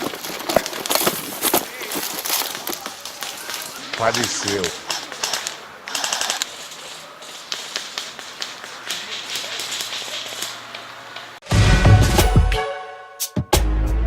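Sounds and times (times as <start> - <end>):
airsoft guns firing: 0.0 - 11.4
loud electronic music: 11.5 - 12.6.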